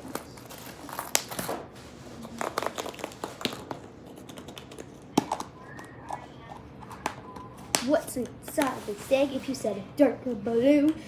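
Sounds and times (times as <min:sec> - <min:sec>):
plastic crinkling: 0:00.0 - 0:06.2.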